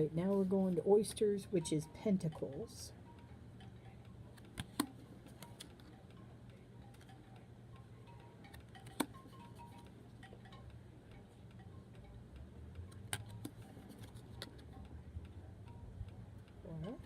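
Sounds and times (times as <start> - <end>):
faint steady hum: 0.0 - 17.0
cards clicking and tapping: 4.3 - 5.9, 8.5 - 9.2, 12.8 - 15.4.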